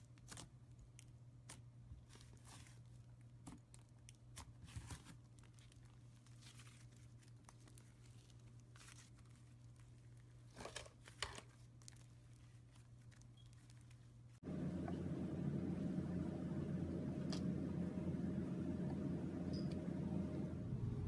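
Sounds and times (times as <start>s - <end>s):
low steady hum: 14.2s - 21.0s
loud steady rumbling noise: 14.4s - 21.0s.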